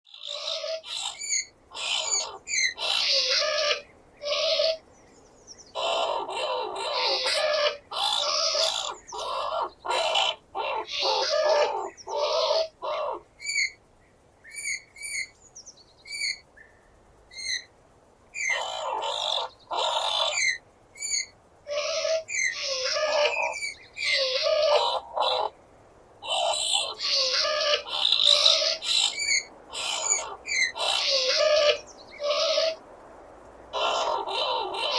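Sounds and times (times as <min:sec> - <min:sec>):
skunk shrieking and squeaking: 0:00.1 - 0:04.8, 0:05.8 - 0:13.8, 0:18.4 - 0:25.5, 0:26.2 - 0:32.8, 0:33.7 - 0:34.9.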